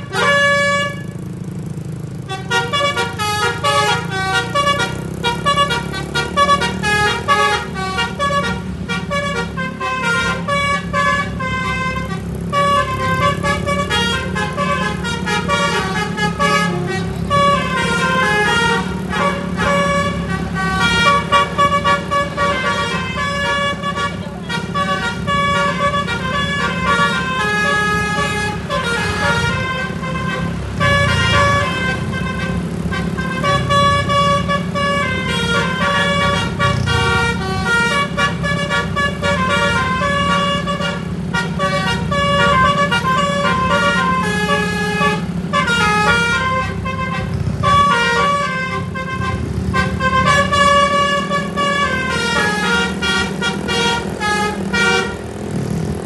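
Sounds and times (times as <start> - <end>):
bus engine hum: 0.0 - 56.0
bus horn playing a tune: 0.0 - 56.0.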